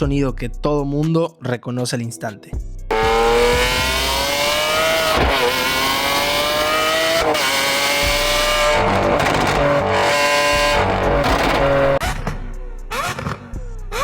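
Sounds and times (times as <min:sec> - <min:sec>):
car engine accelerating hard: 0:02.9 - 0:12.1
gear upshifts: 0:02.9 - 0:12.3.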